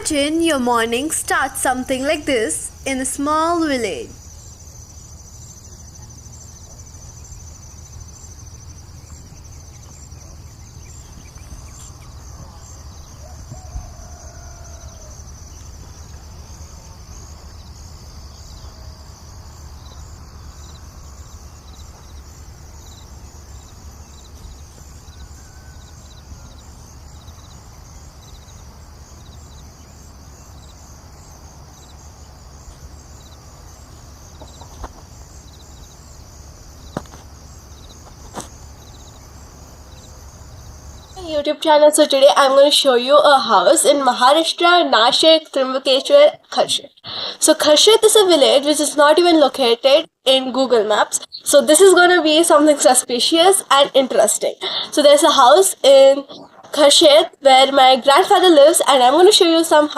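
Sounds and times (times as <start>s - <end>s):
insects chirring: 0.0s - 59.9s
faint bird calls: 3.6s - 36.2s.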